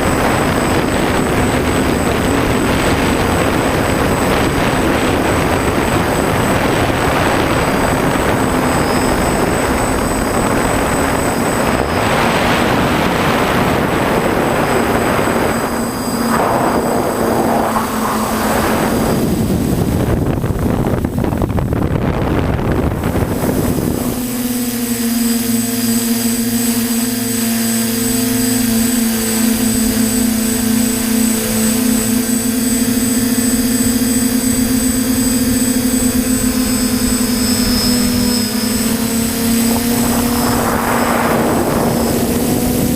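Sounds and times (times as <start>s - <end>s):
heavy rushing noise: 0.0s - 24.1s, 38.4s - 42.9s
quadcopter motors buzzing: 0.0s - 42.9s.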